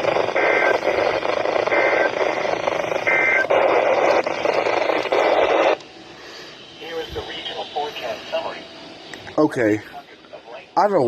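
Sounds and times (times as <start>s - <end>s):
digital data tone bursts: 0.0s - 5.8s
radio static: 0.0s - 5.8s, 6.8s - 8.7s, 9.4s - 11.0s.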